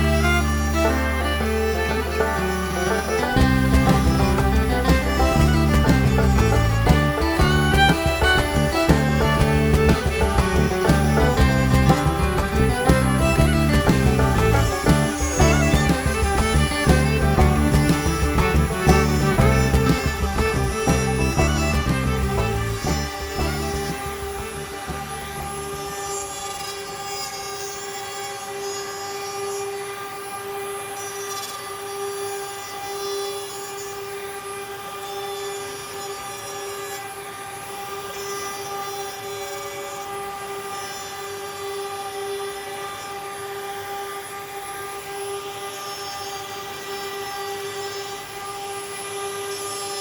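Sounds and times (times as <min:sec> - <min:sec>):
power tool motor whine: 0:11.4 - 0:50.0.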